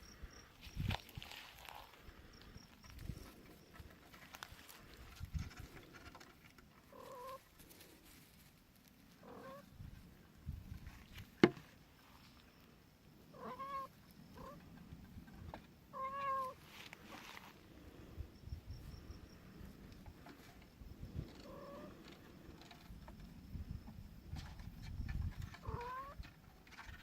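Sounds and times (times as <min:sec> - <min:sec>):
kitten mewing: 0:13.4 - 0:14.6.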